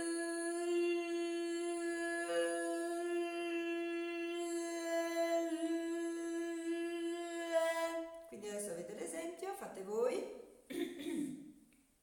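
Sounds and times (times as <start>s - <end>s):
woman humming a steady tone: 0.0s - 8.2s.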